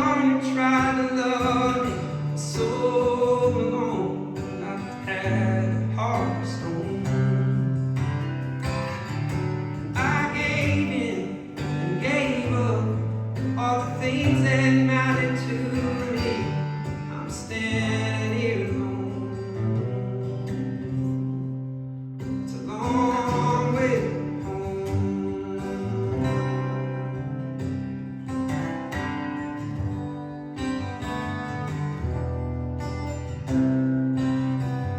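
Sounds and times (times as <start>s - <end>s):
strummed acoustic guitar: 0.0s - 34.9s.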